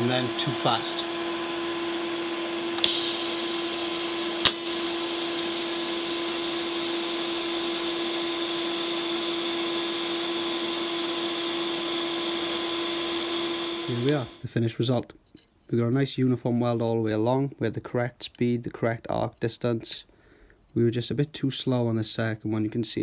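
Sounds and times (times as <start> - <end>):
welding arc hissing: 0.0 - 14.4
constant hum: 0.0 - 14.5
sharp click: 2.8 - 3.2, 4.4 - 4.8.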